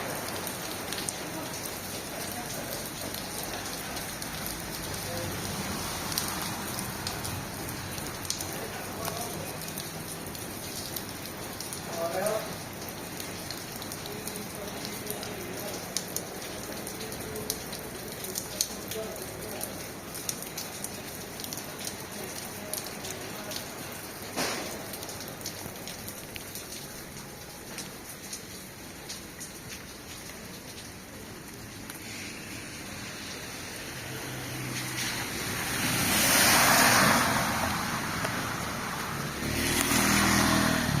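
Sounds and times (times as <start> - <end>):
rain drop taps: 0.0 - 40.8
heavy rain falling: 0.0 - 41.0
water spraying from car: 0.0 - 41.0.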